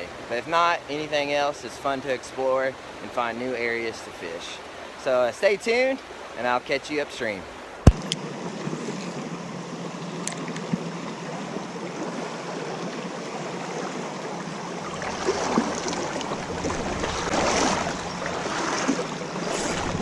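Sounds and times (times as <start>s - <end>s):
creek water running: 0.8s - 20.0s.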